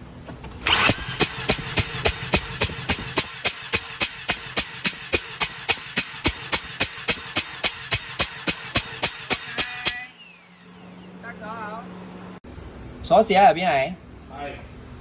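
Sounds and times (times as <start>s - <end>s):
rotary engine cranking: 0.5s - 11.2s
starter motor hum: 0.5s - 12.4s
sharp pulsing puffs: 0.7s - 11.1s.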